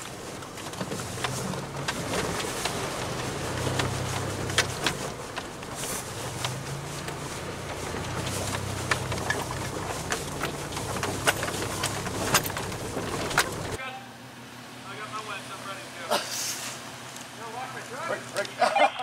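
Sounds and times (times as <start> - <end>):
sharp clicks and knocks: 0.0 - 13.8
vehicle engine running: 0.0 - 16.1.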